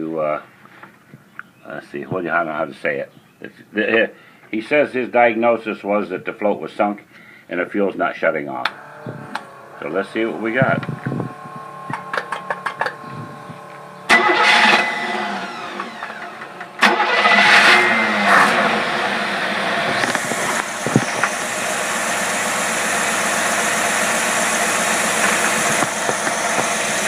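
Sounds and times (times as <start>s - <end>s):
engine starting and running: 8.5s - 27.0s.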